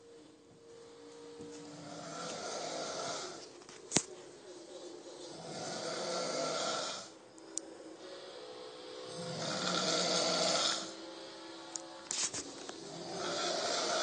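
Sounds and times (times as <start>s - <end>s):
quiet breath: 0.0s - 14.0s
man snoring loudly: 1.6s - 3.5s, 5.2s - 7.2s, 8.2s - 11.7s, 12.7s - 14.0s.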